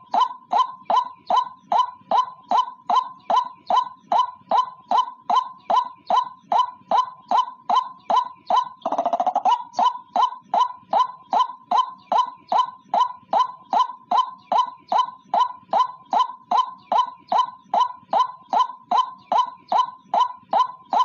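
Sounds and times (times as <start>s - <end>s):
bird rattle call: 0.0s - 21.0s
waterhen calling: 0.0s - 21.0s.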